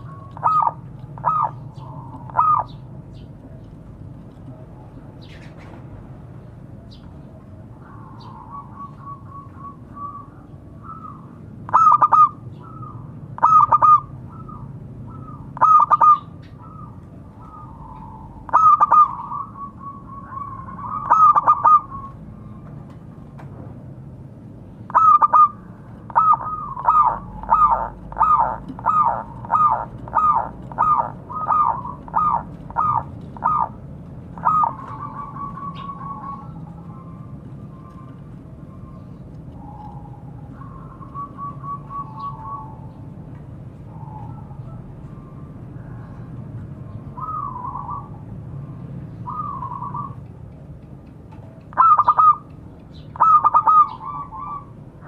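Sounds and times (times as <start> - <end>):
dove cooing: 0.0 - 3.7, 7.4 - 22.7, 24.9 - 43.0, 46.9 - 50.2, 51.4 - 52.5, 53.2 - 54.8.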